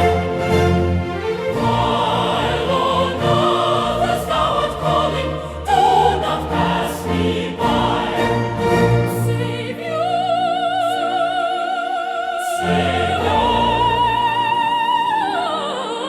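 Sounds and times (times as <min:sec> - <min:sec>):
orchestral accompaniment: 0:00.0 - 0:11.5, 0:12.5 - 0:16.0
choir singing sustained notes: 0:00.0 - 0:16.0.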